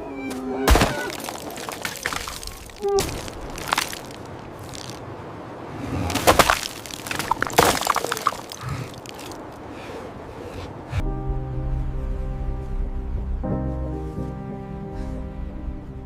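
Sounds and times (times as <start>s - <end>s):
sharp cracking and crunching: 0.7s - 5.1s, 6.0s - 9.4s
music with held tones: 11.1s - 16.0s.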